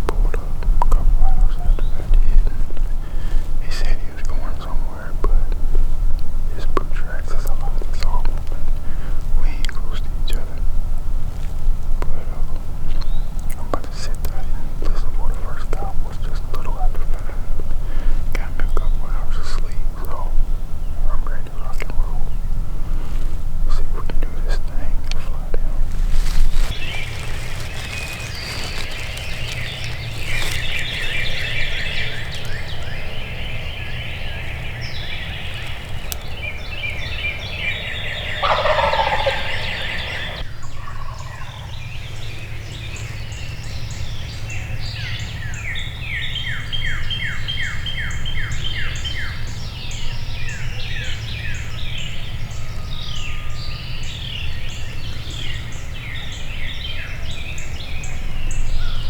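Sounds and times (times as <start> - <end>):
songbirds trilling: 0.0 - 59.0
turkey gobbling: 0.2 - 2.2, 23.8 - 41.7.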